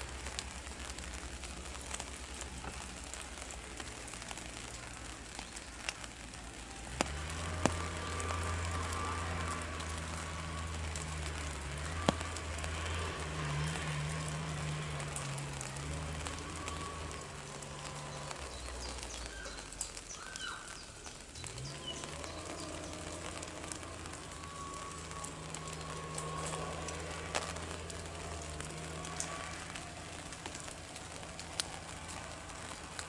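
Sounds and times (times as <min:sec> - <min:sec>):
raindrops tapping on an umbrella: 0:00.0 - 0:33.0
bird chirps: 0:18.8 - 0:22.8.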